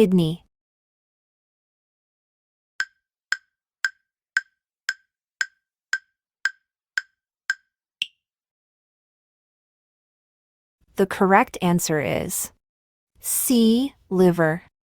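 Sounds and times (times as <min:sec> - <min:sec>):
countdown timer ticks: 0:02.8 - 0:08.2.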